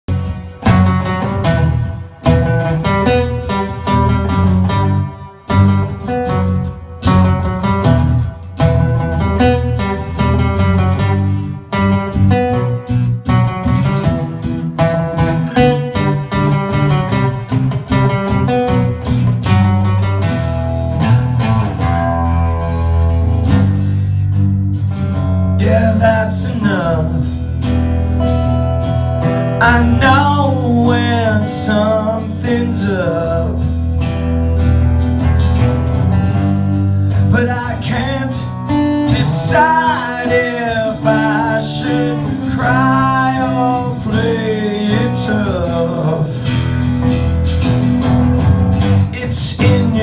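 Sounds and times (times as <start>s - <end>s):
low bass line: 0.0s - 50.0s
acoustic guitar strumming: 0.1s - 50.0s
person singing: 25.5s - 34.1s, 37.0s - 46.8s, 49.0s - 50.0s.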